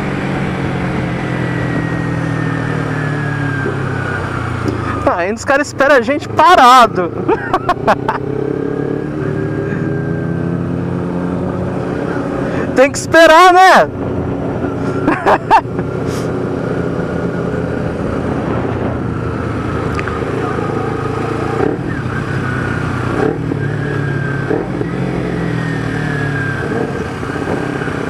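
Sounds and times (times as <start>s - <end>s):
motorcycle engine running: 13.9s - 28.0s.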